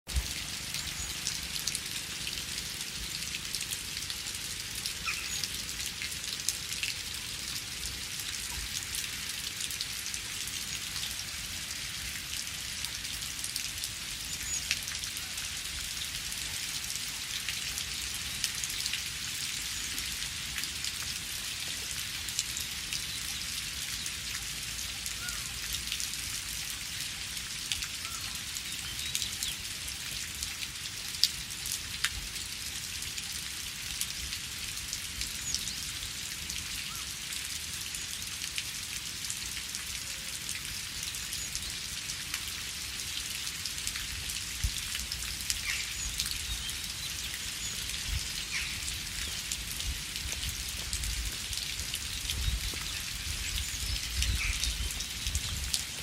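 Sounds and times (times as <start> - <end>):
steady rain hiss: 0.1 - 56.0
rain drop clicks: 45.5 - 56.0.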